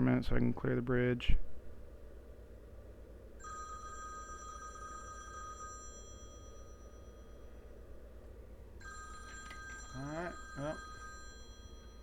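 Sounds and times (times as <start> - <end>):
low steady hum: 0.0 - 12.0
telephone ringing: 3.4 - 7.6, 8.8 - 12.0.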